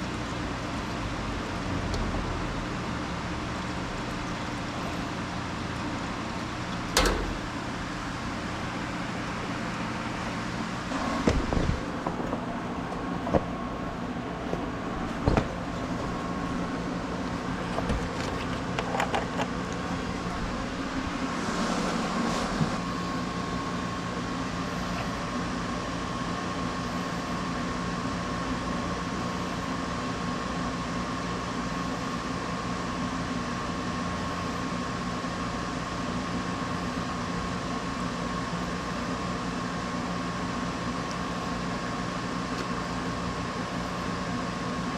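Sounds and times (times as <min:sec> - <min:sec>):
mechanical hum: 0:00.0 - 0:44.9
sharp knocks: 0:07.0 - 0:07.5.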